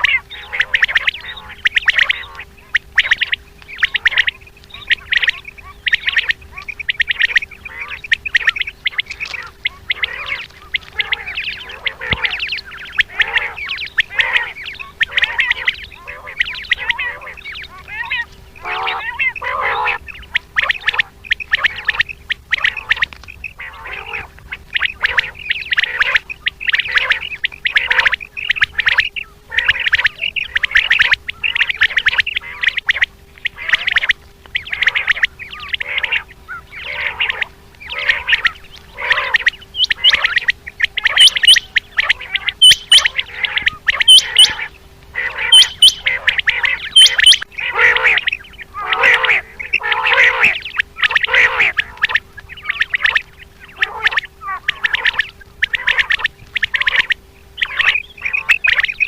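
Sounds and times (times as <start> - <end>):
quail calling: 0.0 - 59.0
steady low hum: 0.0 - 59.0.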